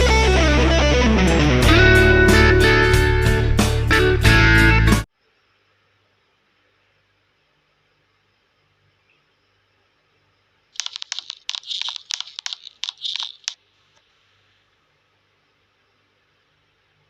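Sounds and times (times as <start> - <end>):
rustling handling noise: 10.8 - 13.6.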